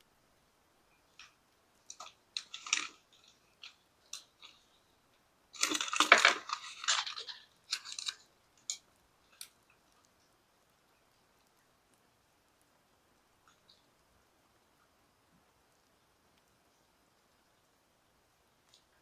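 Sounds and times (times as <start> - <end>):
small clicks: 1.1 - 4.8, 5.6 - 10.4, 13.4 - 14.1, 18.6 - 19.0
crunchy rustling: 1.2 - 10.1.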